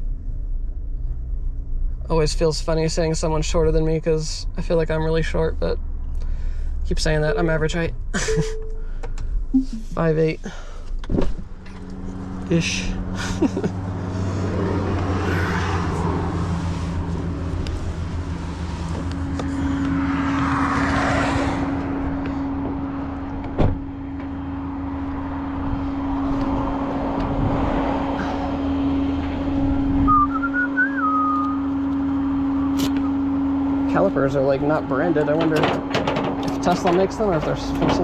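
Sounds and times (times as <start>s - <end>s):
truck engine humming: 7.2s - 38.0s
steady drone: 11.5s - 35.7s.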